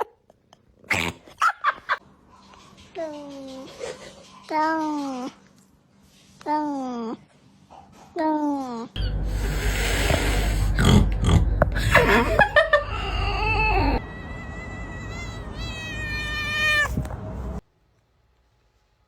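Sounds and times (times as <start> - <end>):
low hum: 9.0 - 14.9.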